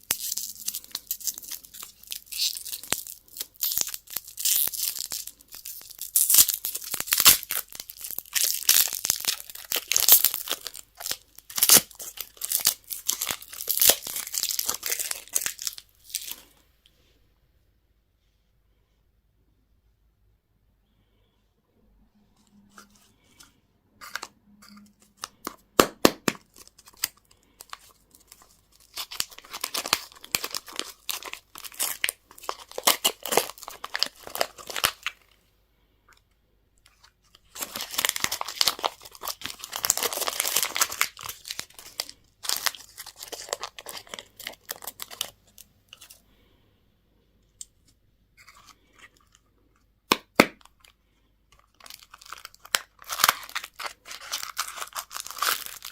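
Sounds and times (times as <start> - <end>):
wrapping crinkling: 0.0 - 16.6, 26.4 - 35.4, 36.8 - 46.2, 50.6 - 55.9.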